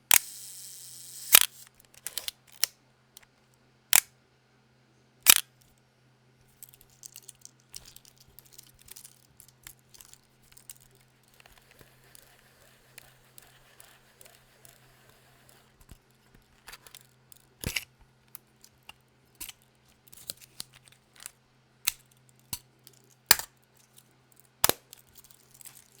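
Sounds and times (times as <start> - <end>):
camera click: 0.1 - 2.7.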